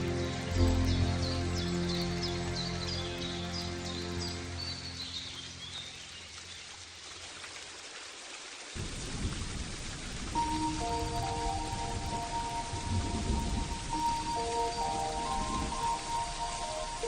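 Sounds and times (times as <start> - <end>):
soft music: 0.0 - 6.2, 10.4 - 17.0
birds chirping: 0.0 - 6.7, 10.4 - 17.0
rain: 0.0 - 17.0
thunder rumbling: 8.8 - 17.0.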